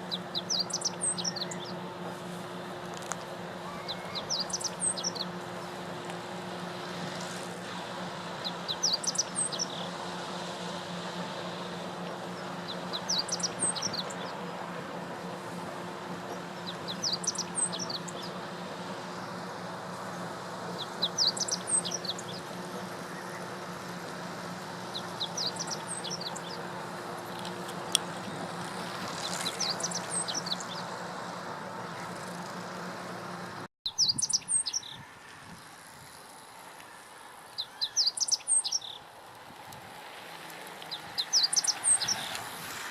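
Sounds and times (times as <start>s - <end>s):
bunting singing: 0.0s - 2.0s, 3.5s - 6.0s, 8.1s - 10.6s, 12.2s - 24.0s.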